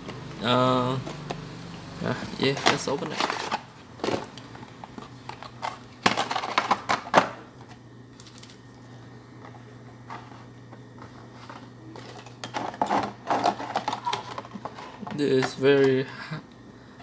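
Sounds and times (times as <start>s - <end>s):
crackly plastic rustling: 0.0s - 16.0s
steady low hum: 0.0s - 17.0s
packaging clicks: 2.0s - 8.8s, 11.0s - 16.0s.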